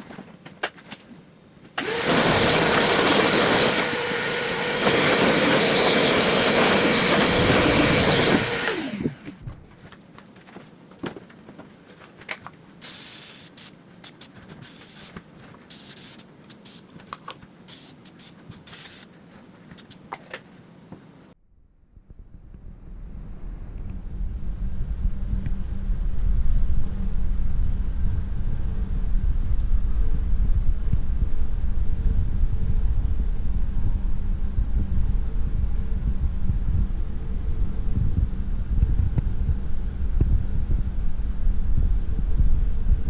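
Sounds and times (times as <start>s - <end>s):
electric motor whirring: 1.8s - 9.4s.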